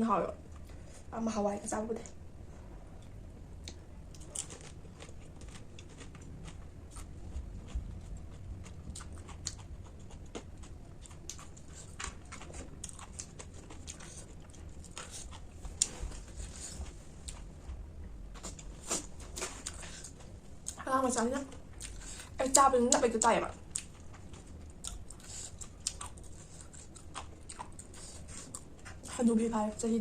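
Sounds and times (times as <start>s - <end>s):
person chewing crunchy snack: 3.6s - 17.4s, 23.7s - 29.1s.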